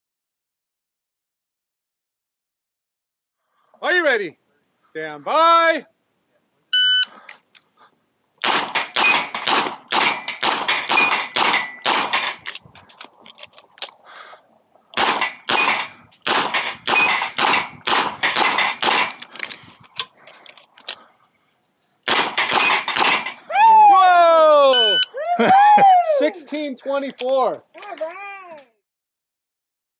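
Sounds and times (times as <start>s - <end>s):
steel targets pinging: 8.4s - 12.6s, 15.0s - 19.3s, 22.1s - 23.4s.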